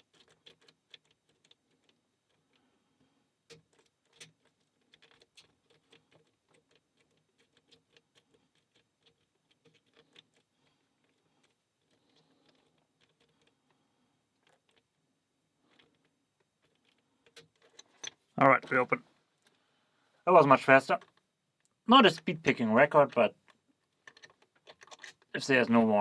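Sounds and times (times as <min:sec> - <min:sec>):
lock pick clicking and scraping: 0:00.0 - 0:02.6, 0:03.5 - 0:15.0, 0:15.6 - 0:18.4, 0:23.4 - 0:26.0.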